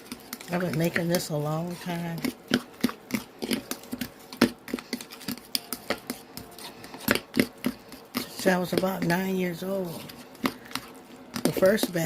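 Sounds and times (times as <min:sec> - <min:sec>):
fork tapping against mixing bowl: 0:00.0 - 0:09.3.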